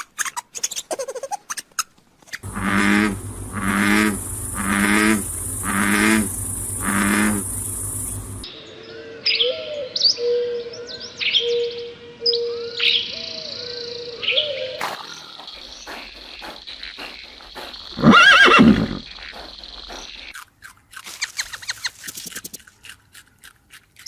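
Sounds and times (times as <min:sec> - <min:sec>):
animal pitched calls: 0:02.4 - 0:08.4, 0:16.2 - 0:20.4
birds chirping: 0:02.4 - 0:08.5, 0:13.1 - 0:20.4.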